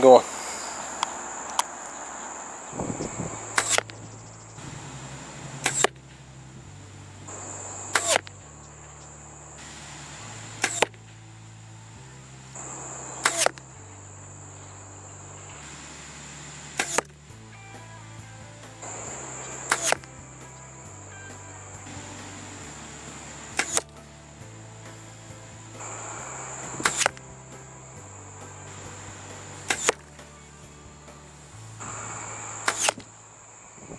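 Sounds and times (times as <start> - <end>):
crickets trilling: 0.0 - 6.3, 7.2 - 33.9
arrows shot from a bow: 2.8 - 4.8, 5.6 - 6.3, 7.9 - 8.3, 10.5 - 11.2, 13.2 - 13.6, 16.7 - 17.2, 18.6 - 20.7, 21.8 - 24.1, 25.8 - 27.3, 29.6 - 30.4, 31.8 - 33.1
arrows hitting a target: 8.0 - 8.3, 10.6 - 11.0, 13.2 - 13.6, 16.8 - 17.2, 19.5 - 20.0, 23.6 - 24.0, 29.7 - 30.2, 32.6 - 33.1.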